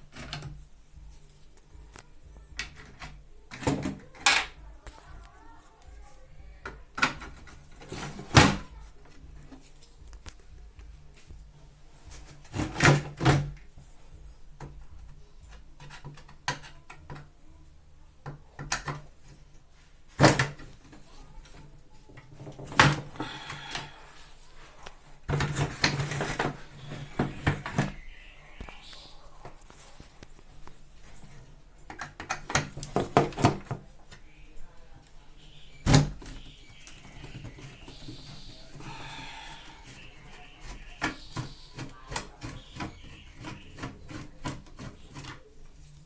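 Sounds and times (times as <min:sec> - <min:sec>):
hand tools clicking and knocking: 0:30.6 - 0:34.2, 0:35.0 - 0:45.8.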